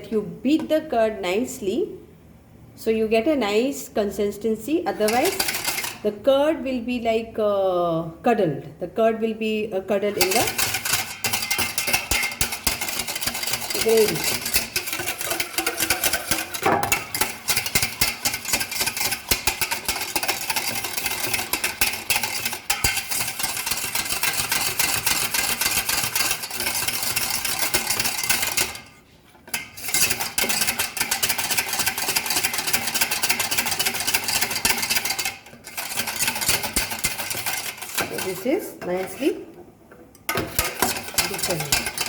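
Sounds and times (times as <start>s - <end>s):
metal utensil clattering in bowl: 5.0s - 6.0s, 10.1s - 28.9s, 29.5s - 39.3s, 40.3s - 42.0s.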